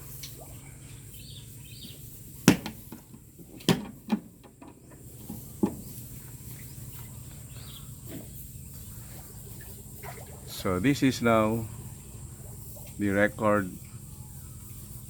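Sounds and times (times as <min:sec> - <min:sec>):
low steady hum: 0:00.0 - 0:15.0
latch and cover clicking: 0:02.5 - 0:05.8.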